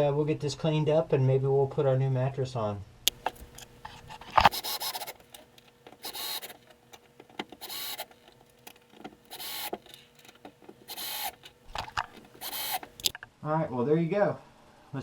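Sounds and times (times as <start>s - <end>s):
power drill driving screws: 3.1s - 13.1s.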